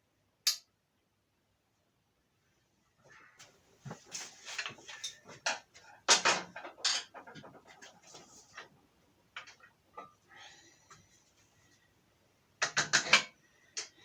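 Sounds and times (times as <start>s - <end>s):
parts knocking and clunking: 4.8s - 8.0s.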